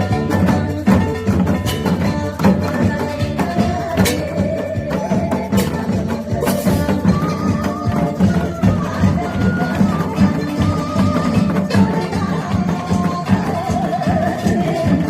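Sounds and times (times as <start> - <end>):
music with steady percussion beat: 0.0 - 15.0.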